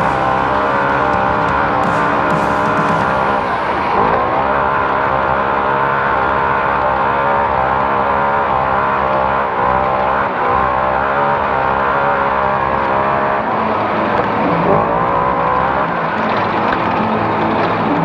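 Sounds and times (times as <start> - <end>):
race car engine at high revs: 0.0 - 18.0.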